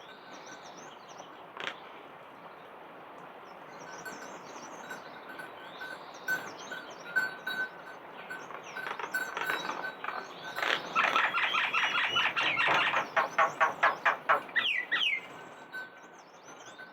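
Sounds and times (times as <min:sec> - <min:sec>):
faint bird or insect chirps: 0:09.6 - 0:16.9.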